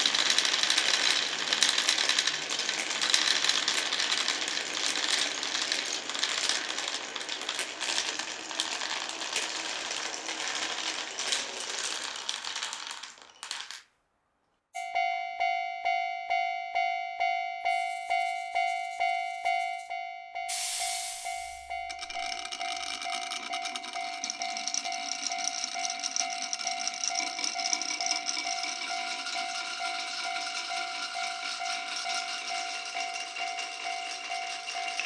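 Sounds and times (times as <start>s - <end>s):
marbles rolling on wooden tracks: 0.0s - 14.0s, 17.7s - 19.9s, 20.5s - 35.0s
level-crossing bell ringing: 14.8s - 35.0s.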